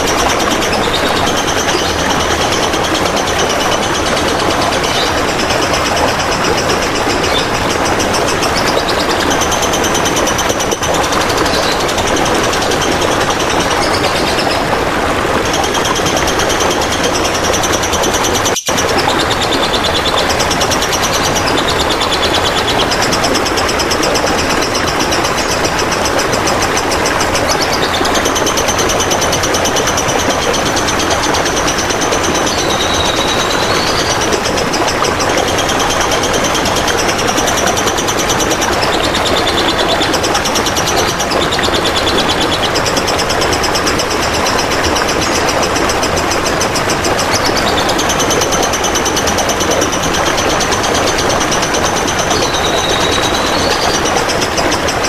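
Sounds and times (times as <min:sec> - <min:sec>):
trickling water: 0:00.0 - 0:55.0
bird trilling: 0:26.7 - 0:42.8, 0:47.2 - 0:54.1.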